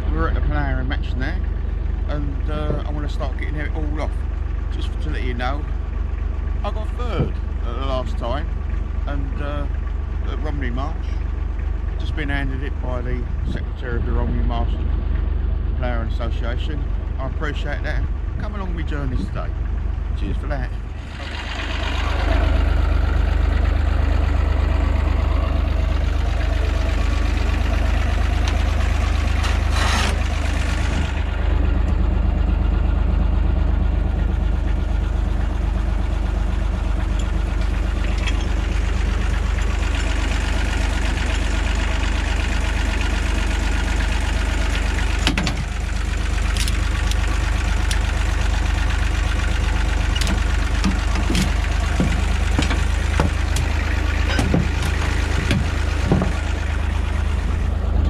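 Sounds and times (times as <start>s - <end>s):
engine idling: 0.0s - 58.0s
sharp knocks and clanks: 2.4s - 3.4s, 6.8s - 7.8s, 37.0s - 40.6s, 45.1s - 45.8s, 50.0s - 57.0s.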